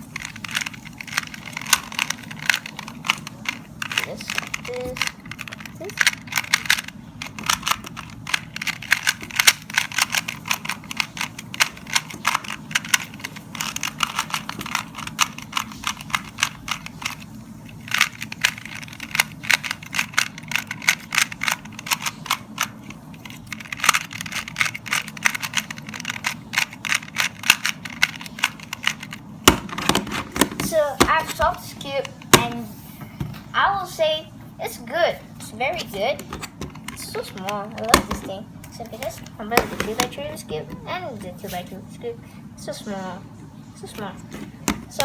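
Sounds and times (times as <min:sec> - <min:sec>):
puzzle cube clacking: 0:00.0 - 0:33.2, 0:35.6 - 0:41.7, 0:44.0 - 0:45.0
steady low hum: 0:00.0 - 0:45.0.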